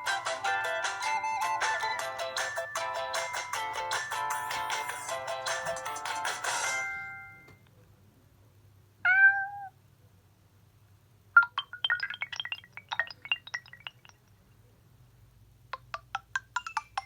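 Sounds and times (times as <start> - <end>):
recorded cat meow: 9.0 - 9.8.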